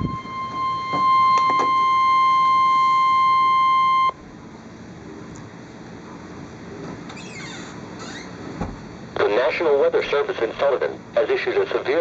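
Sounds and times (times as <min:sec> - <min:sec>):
steady warning alarm tone: 0:00.0 - 0:04.6
faint radio hiss: 0:09.2 - 0:12.0.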